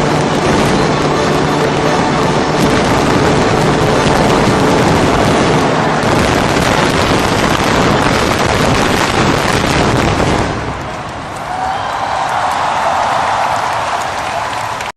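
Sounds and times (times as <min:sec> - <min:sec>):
fireworks bangs and crackling: 0:00.0 - 0:11.5.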